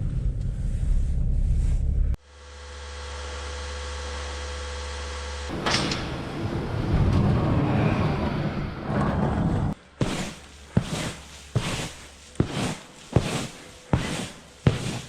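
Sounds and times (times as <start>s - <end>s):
steady mechanical hum: 0.0s - 15.0s
loud scraping rumbling noise: 5.5s - 15.0s.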